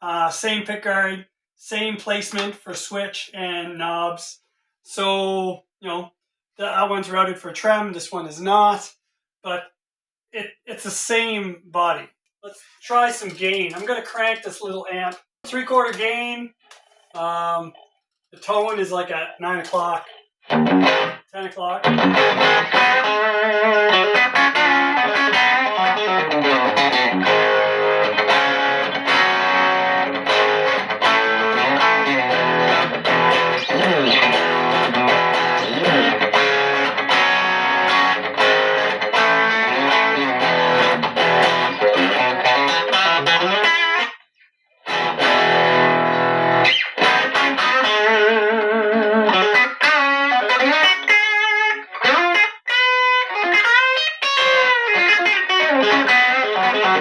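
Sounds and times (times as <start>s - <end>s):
overdriven electric guitar playing: 20.4s - 44.2s, 44.8s - 57.0s.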